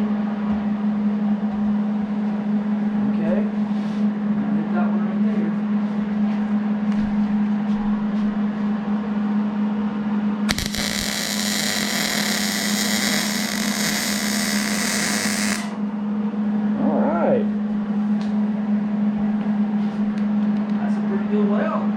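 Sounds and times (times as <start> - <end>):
steady low hum: 0.0 - 21.9
welder arc crackling: 10.5 - 15.9.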